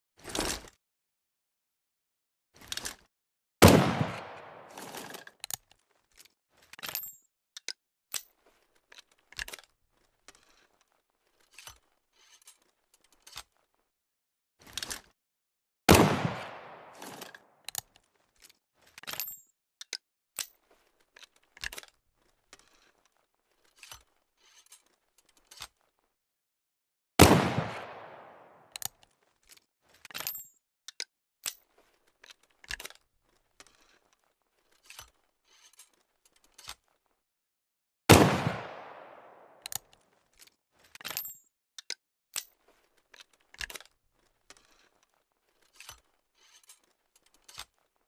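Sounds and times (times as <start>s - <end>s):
pistol shots: 3.6s - 5.0s, 15.9s - 17.2s, 27.2s - 28.6s, 38.1s - 39.6s
metallic clicks of pistol lock: 41.0s - 42.6s.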